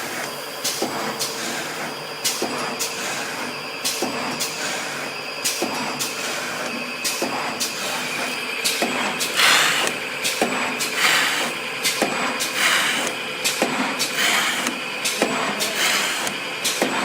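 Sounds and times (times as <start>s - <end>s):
paper cutter machine knocking: 5.5s - 17.0s.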